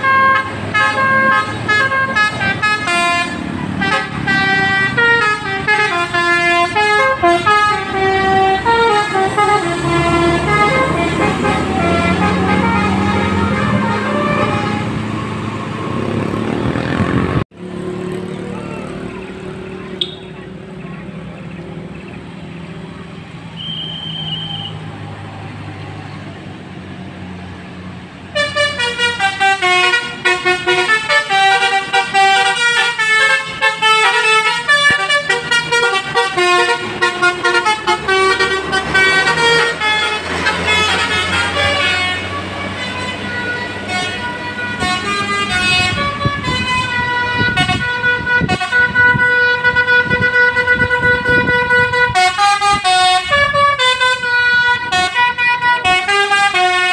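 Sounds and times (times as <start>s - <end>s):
bus horn playing tune: 0.0s - 15.5s, 28.3s - 56.9s
bus engine humming: 0.0s - 56.9s.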